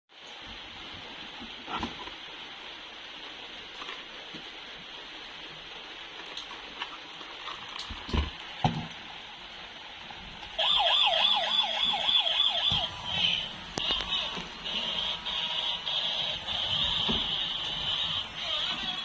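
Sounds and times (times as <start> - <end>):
toy electronic siren warbling: 10.6 - 19.0.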